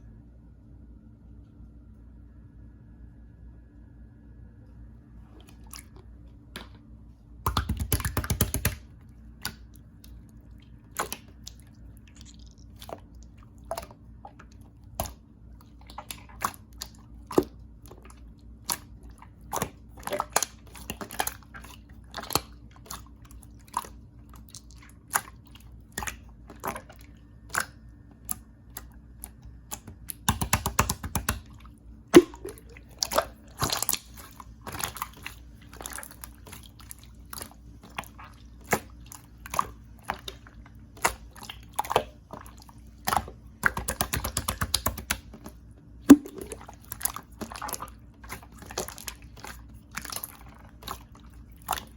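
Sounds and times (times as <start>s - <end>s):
slime clicking pops: 7.5s - 8.8s, 30.2s - 31.4s.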